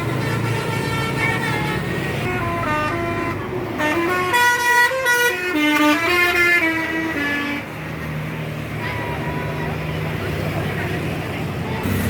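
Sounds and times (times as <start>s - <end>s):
bus musical horn playing tune: 0.0s - 7.8s.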